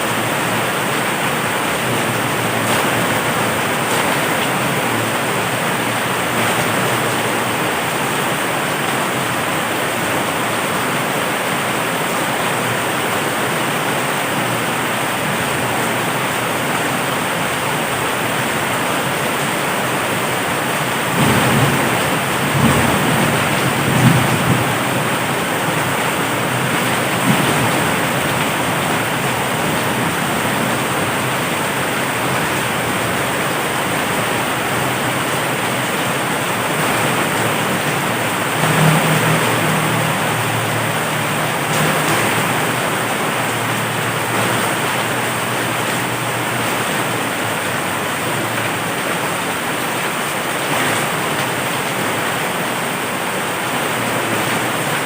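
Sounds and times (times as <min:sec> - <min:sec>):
heavy rain pouring: 0:00.0 - 0:55.0
thunder rumbling: 0:20.9 - 0:45.9.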